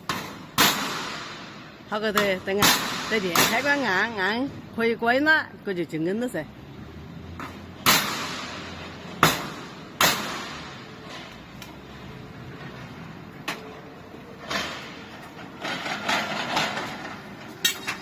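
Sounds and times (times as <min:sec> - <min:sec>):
metal shutter door rattling: 0:07.4 - 0:18.0.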